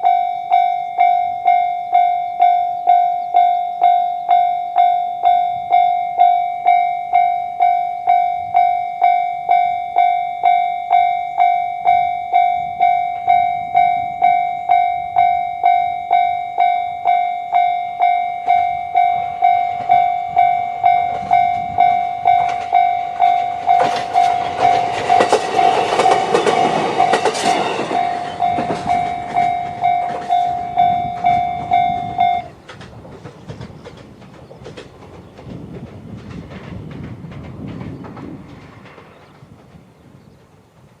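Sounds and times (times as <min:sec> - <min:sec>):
level-crossing alarm bell: 0:00.0 - 0:32.6
train rattling over crossing: 0:00.0 - 0:41.0.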